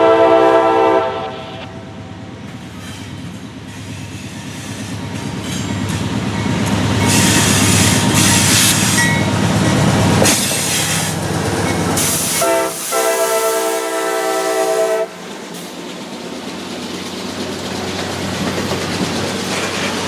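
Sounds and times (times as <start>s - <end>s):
locomotive horn chord: 0.0s - 1.8s, 12.4s - 15.2s
diesel locomotive engine under load: 0.0s - 20.0s.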